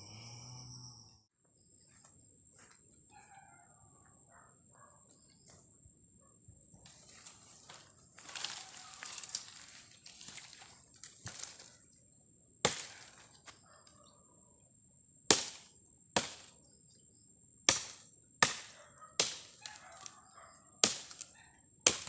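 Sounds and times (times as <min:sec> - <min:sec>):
firewood chopping strikes: 0:12.6 - 0:13.3, 0:15.3 - 0:16.5, 0:17.7 - 0:20.1, 0:20.8 - 0:22.0.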